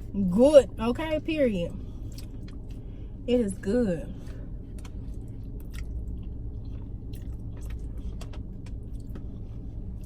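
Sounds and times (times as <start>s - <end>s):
steady low hum: 0.0s - 10.0s
person chewing food: 2.0s - 2.8s, 4.2s - 10.0s.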